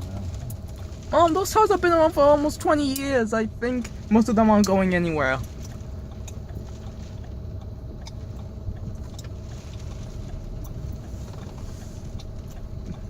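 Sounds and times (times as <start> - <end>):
car engine and road rumble: 0.0 - 13.0
faint steady hum: 0.0 - 13.0.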